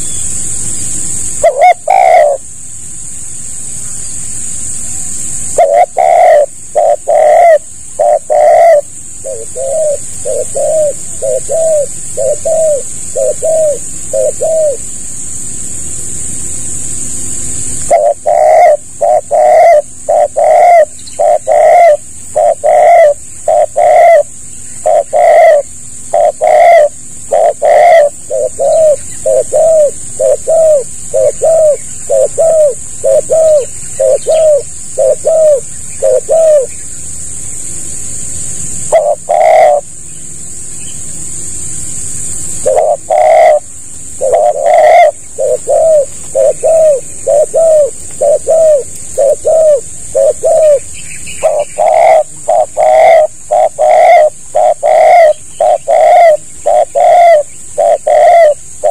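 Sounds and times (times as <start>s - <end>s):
steady high hiss: 0.0s - 58.9s
dove cooing: 1.0s - 2.5s, 5.2s - 15.6s, 16.3s - 36.8s, 38.8s - 40.0s, 41.7s - 58.9s.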